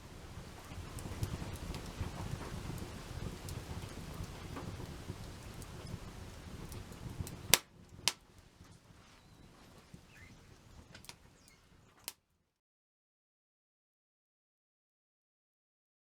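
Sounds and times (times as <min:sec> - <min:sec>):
campfire crackling: 0:00.0 - 0:12.2
wood fire popping: 0:00.0 - 0:12.2.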